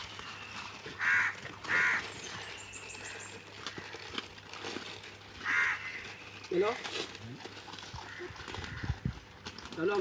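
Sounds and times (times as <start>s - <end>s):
outdoor background noise: 0.0s - 10.0s
harsh animal calls: 1.0s - 4.3s, 5.4s - 6.5s.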